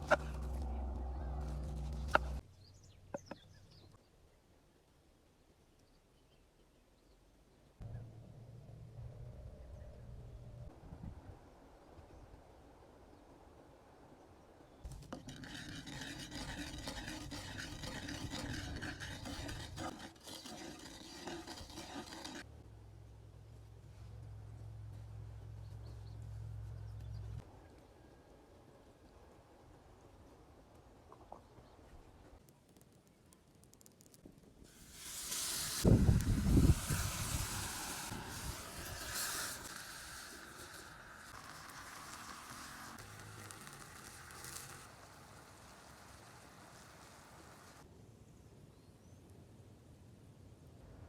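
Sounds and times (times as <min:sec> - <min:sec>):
brief low rumble: 0:00.0 - 0:02.4
utensil scraping in cooking pot: 0:00.0 - 0:02.4, 0:14.9 - 0:22.5, 0:34.7 - 0:46.8
meat sizzling over campfire: 0:34.7 - 0:47.8.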